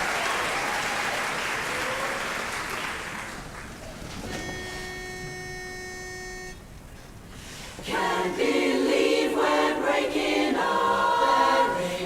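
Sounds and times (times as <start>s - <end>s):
audience applauding: 0.0s - 4.0s.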